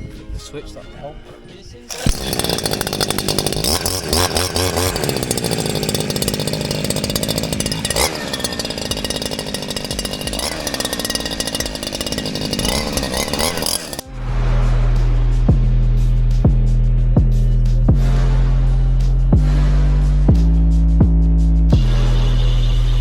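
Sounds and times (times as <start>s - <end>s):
grass trimmer running: 1.9s - 14.0s.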